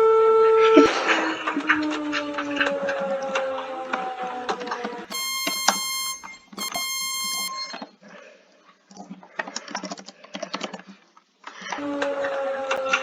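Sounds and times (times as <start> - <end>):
electronic alarm beeps: 5.1 - 7.9.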